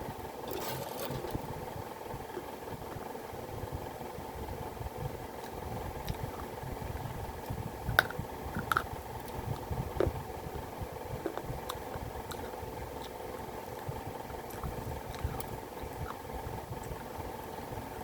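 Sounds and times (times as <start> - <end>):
person chewing and crunching: 5.4 - 10.2, 11.2 - 16.2.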